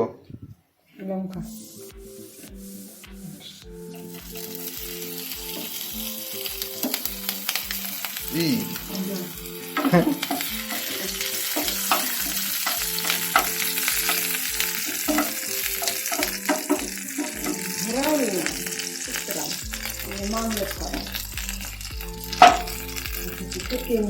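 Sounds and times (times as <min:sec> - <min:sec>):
onion sizzling in hot oil: 0:01.4 - 0:24.0
spatula scraping a pan: 0:09.0 - 0:18.5.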